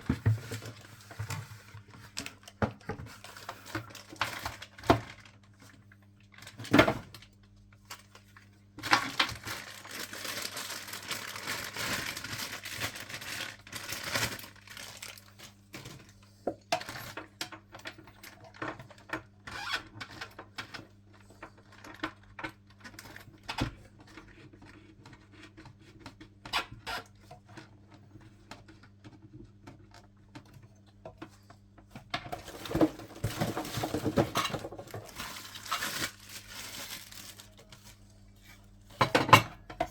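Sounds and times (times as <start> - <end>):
plastic packaging crinkling: 3.1 - 16.2, 32.3 - 38.2.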